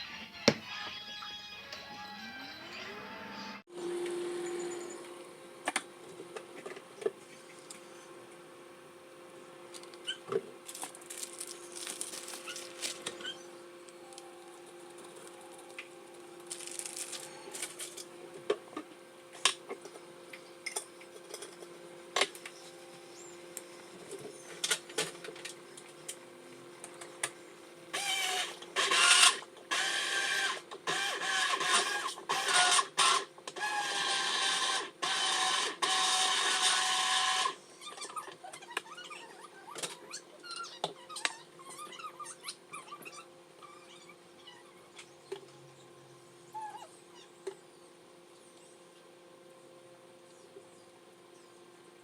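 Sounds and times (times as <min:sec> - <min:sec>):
steady low hum: 0:02.2 - 0:28.8.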